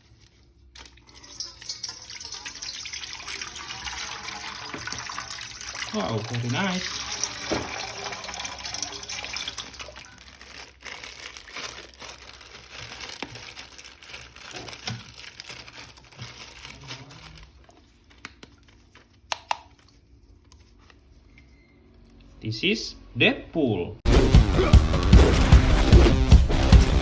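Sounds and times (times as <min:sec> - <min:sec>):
splashing while rinsing: 0:00.8 - 0:13.3
water running from a tap: 0:00.9 - 0:10.2.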